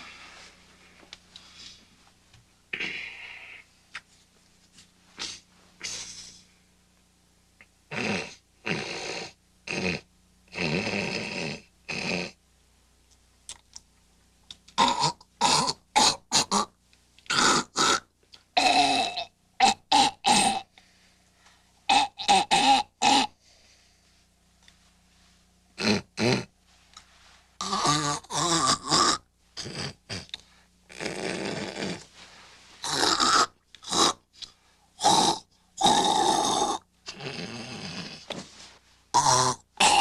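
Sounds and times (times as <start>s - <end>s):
man snorting and hawking: 2.8s - 3.7s, 5.2s - 6.4s, 7.9s - 12.4s, 21.9s - 23.4s, 25.8s - 26.5s, 27.6s - 32.2s, 32.8s - 40.0s.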